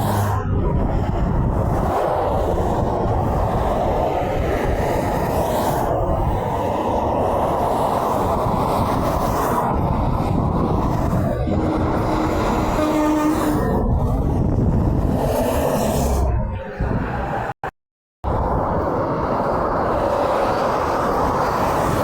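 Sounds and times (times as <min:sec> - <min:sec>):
heavy road traffic rumble: 0:00.0 - 0:22.0
horn steady tone: 0:11.5 - 0:13.8.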